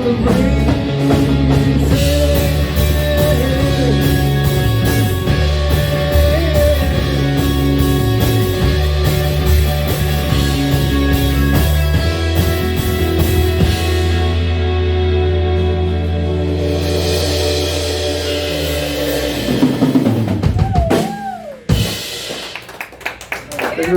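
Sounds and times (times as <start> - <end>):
live rock band playing: 0.0 - 23.0.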